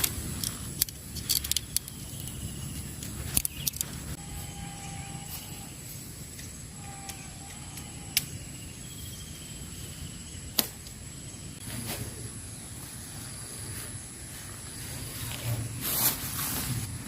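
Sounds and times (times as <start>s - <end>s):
sharp clicks: 3.0s - 4.0s, 6.3s - 8.4s
high-pitched insect drone: 4.1s - 10.4s.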